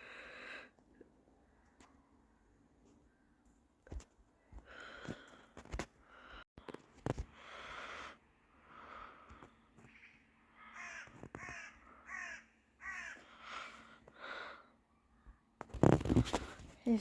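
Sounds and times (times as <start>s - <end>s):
crows cawing: 8.9s - 14.1s.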